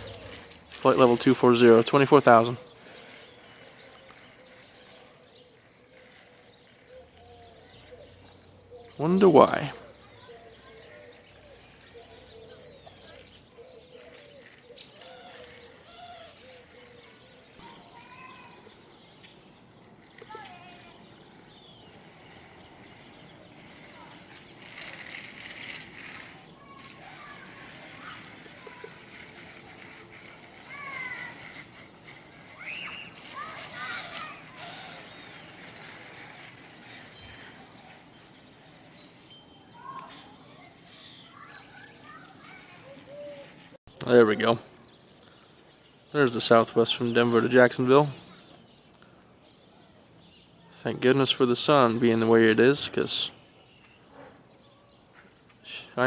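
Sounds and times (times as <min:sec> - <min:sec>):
high bird chirps: 0:00.0 - 0:00.8, 0:32.5 - 0:36.3
faint birds chirping: 0:00.0 - 0:56.0
faint outdoor background noise: 0:00.0 - 0:56.0.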